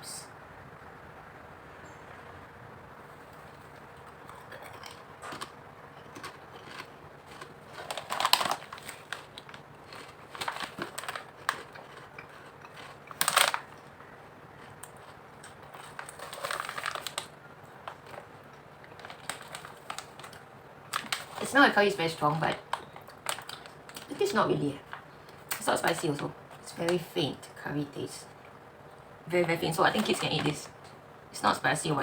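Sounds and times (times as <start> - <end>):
potato chips crunching: 3.6 - 26.9.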